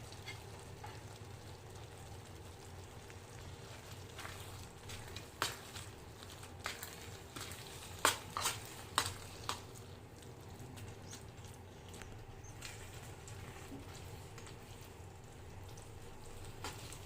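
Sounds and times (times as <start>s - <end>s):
faint steady background noise: 0.0s - 17.0s
utensil scraping a pan: 6.6s - 9.6s.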